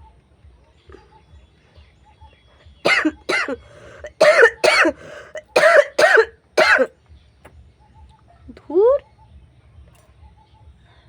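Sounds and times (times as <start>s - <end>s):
person coughing: 2.9s - 6.9s.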